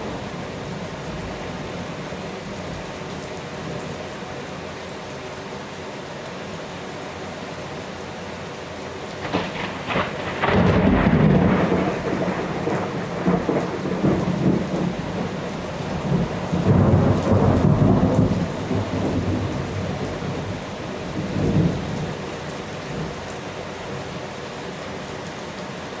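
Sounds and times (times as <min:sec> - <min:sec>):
heavy rain falling: 0:00.0 - 0:26.0
thunder rumbling: 0:09.2 - 0:22.2.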